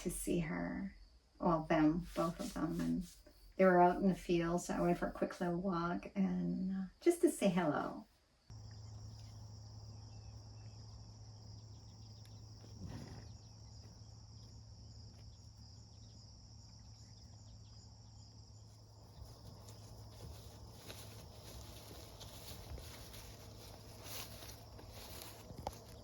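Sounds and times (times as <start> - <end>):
crickets chirping: 7.4 - 26.0.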